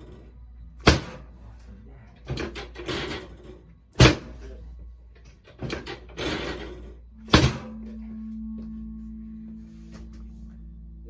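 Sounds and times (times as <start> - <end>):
low steady tone: 7.1 - 11.0.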